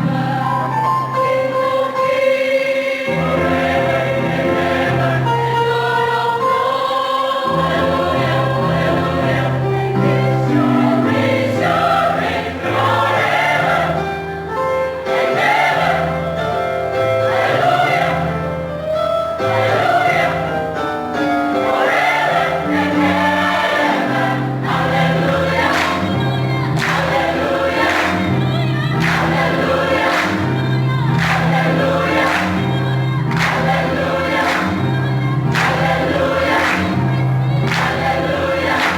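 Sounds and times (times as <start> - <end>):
church choir singing: 0.0 - 38.9.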